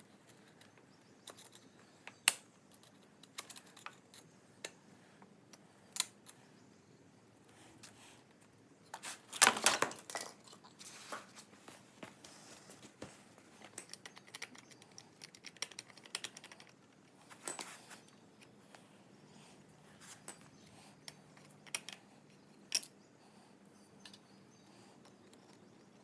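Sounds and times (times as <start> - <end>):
metal parts clicking and rattling: 0.0 - 4.8, 8.9 - 10.8, 13.5 - 18.2, 20.2 - 23.0.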